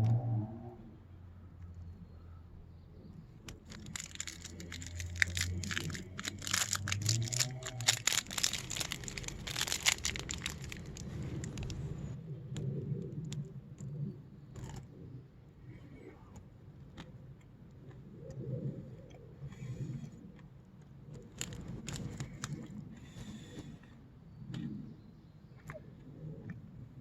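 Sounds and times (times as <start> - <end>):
ice cream bar crunching: 3.4 - 12.0, 21.2 - 22.8
wet chewing: 3.4 - 12.0, 20.0 - 22.8.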